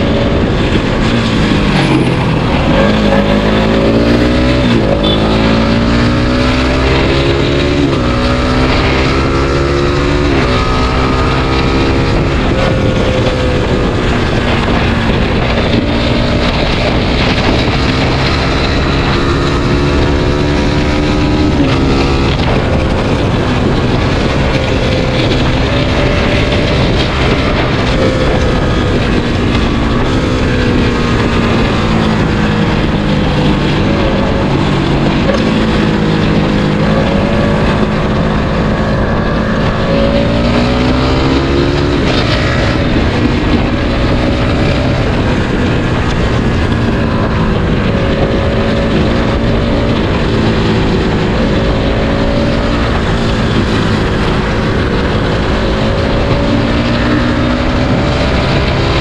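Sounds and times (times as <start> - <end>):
motorcycle engine revving: 0.0 - 59.0
wind noise on microphone: 0.0 - 59.0.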